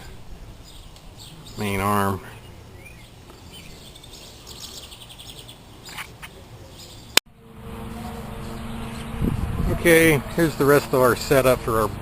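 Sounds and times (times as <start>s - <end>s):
small birds chirping: 0.0s - 7.2s
faint outdoor background noise: 0.0s - 12.0s
steady low hum with tones: 7.3s - 12.0s.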